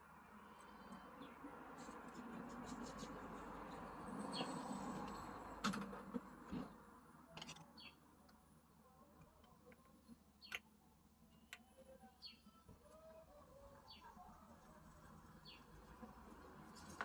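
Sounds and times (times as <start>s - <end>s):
bird chirp: 7.4s - 8.0s, 10.4s - 10.7s, 11.3s - 12.6s.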